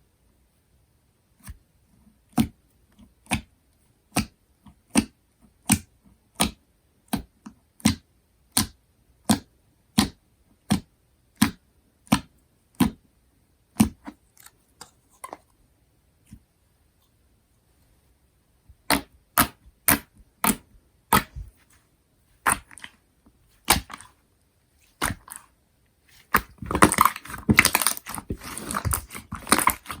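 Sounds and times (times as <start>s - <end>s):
slime squishing with clicking pops: 3.2s - 3.5s, 4.1s - 13.0s, 13.7s - 14.9s, 18.8s - 21.5s.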